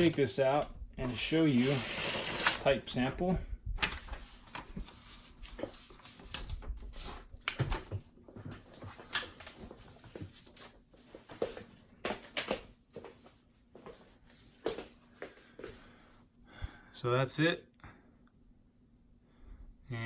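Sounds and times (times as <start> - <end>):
paper rustling: 0.0 - 3.1, 3.8 - 14.9.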